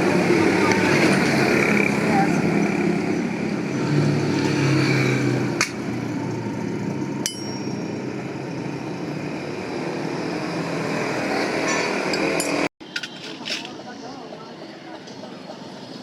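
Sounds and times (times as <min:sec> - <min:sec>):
metallic tool knocks: 0:07.2 - 0:07.8.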